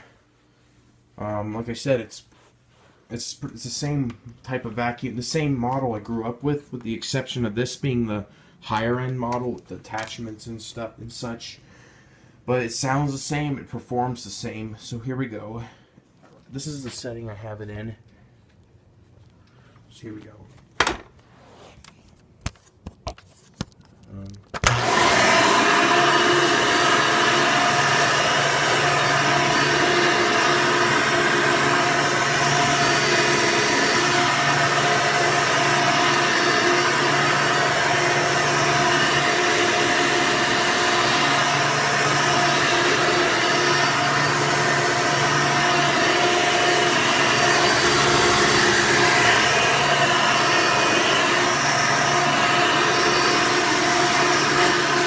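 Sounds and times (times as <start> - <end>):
vacuum cleaner motor whine: 24.6 - 55.0.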